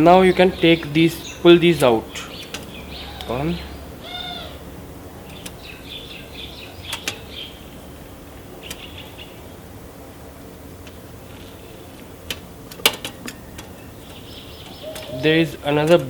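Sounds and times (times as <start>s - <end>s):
birds chirping: 0.0s - 16.0s
wire connectors clicking: 5.2s - 5.7s, 6.8s - 7.4s, 8.6s - 9.0s, 10.8s - 16.0s.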